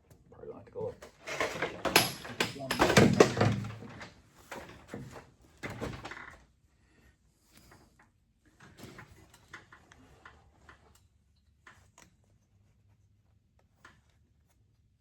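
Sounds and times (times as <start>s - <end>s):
hand tools clinking on metal: 1.3s - 3.5s.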